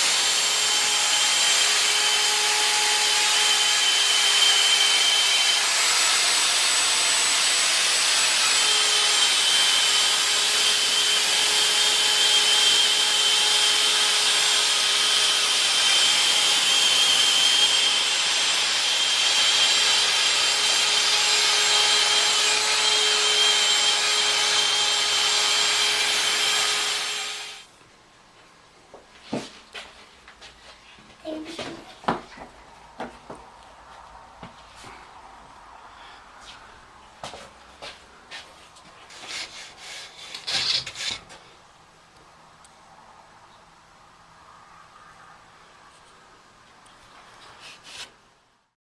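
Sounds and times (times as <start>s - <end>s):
router spindle whining: 0.0s - 27.7s.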